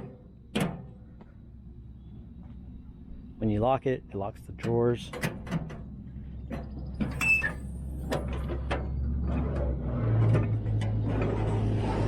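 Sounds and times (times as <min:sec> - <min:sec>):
low steady rumble: 0:00.0 - 0:12.0
brief squeak: 0:07.1 - 0:07.7.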